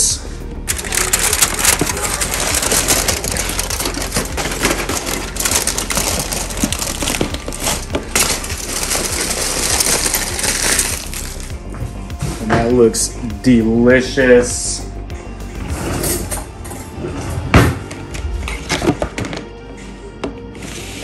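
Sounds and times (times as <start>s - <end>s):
aluminium foil crinkling: 0.7s - 11.5s.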